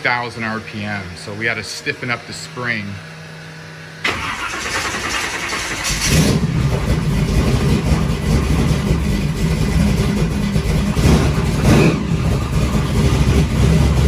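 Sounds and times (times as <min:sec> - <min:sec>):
engine running loudly: 0:00.0 - 0:14.0
engine cranking on starter: 0:04.0 - 0:07.8.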